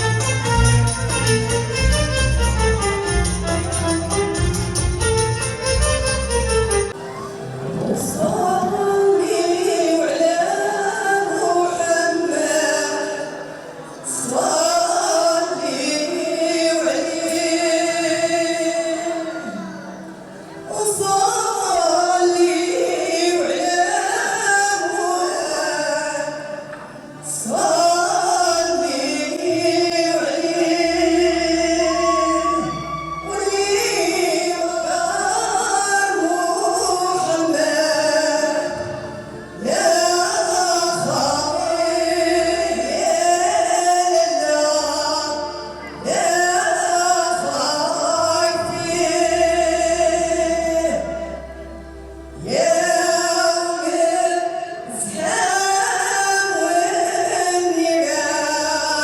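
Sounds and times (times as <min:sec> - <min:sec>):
male and female voices singing: 0:07.8 - 0:20.0, 0:20.7 - 0:51.4.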